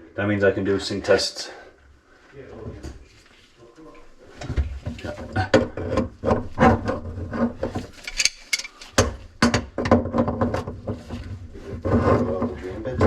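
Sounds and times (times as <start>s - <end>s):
metal scraping: 5.6s - 8.8s
metal parts clicking and knocking: 7.7s - 10.3s.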